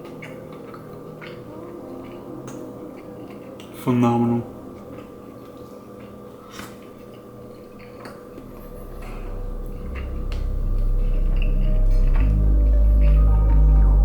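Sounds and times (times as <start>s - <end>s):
music with deep bass: 8.4s - 14.0s.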